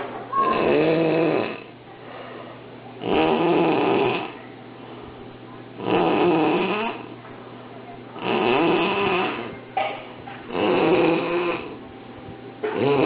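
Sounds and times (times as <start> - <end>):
loud snoring: 0.5 - 1.7, 3.0 - 4.4, 5.8 - 7.1, 8.2 - 9.5, 10.5 - 11.8, 12.6 - 13.0.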